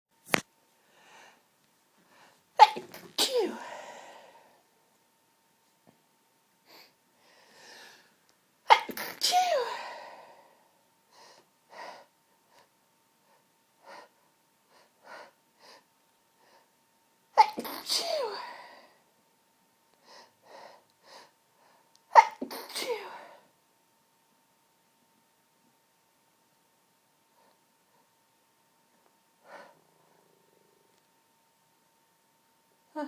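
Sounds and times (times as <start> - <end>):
quiet breaths: 0.7 - 2.6, 6.6 - 8.4, 9.7 - 17.0, 19.9 - 22.1, 27.2 - 31.4
woman sneezing: 2.6 - 3.9, 8.7 - 10.2, 17.4 - 18.7, 22.1 - 23.4.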